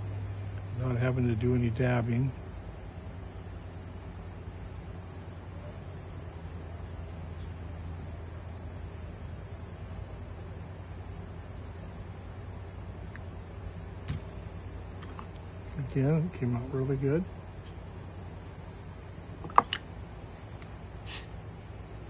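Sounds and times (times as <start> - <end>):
insects trilling: 0.0 - 22.0.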